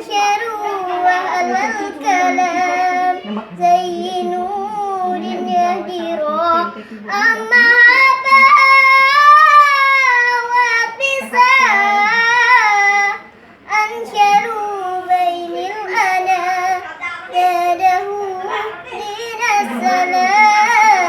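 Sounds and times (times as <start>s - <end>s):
child singing unaccompanied: 0.0s - 21.0s.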